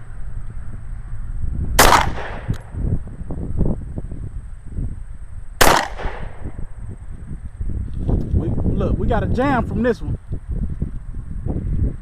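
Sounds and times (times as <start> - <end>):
pistol shots with echo: 1.8 - 2.6, 5.6 - 6.4.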